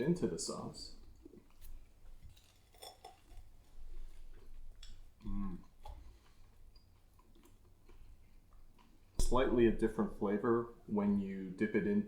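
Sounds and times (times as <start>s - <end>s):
person chewing: 1.0s - 9.2s
person humming mm: 5.2s - 5.6s.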